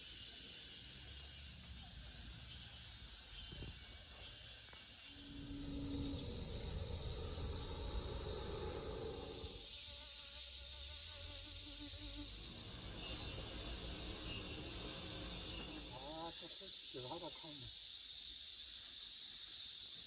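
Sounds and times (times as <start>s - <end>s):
insect chirring: 0.0s - 20.0s
low rumble: 5.2s - 9.6s.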